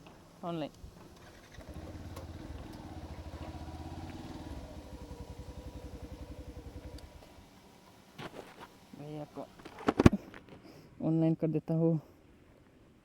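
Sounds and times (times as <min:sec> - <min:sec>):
motorcycle engine pulsing: 0:01.0 - 0:07.4.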